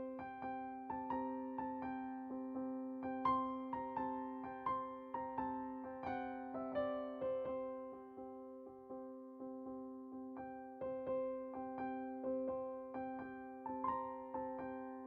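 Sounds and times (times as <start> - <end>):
gentle electric piano melody: 0.0 - 15.0.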